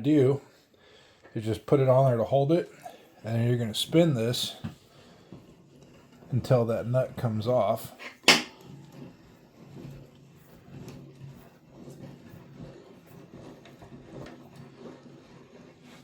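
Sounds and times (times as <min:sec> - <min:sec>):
metal-on-metal rubbing: 0:05.5 - 0:16.0.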